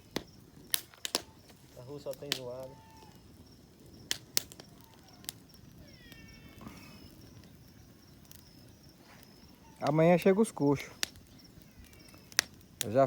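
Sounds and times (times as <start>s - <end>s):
high animal call: 2.5s - 3.4s, 4.6s - 7.5s, 9.0s - 10.2s.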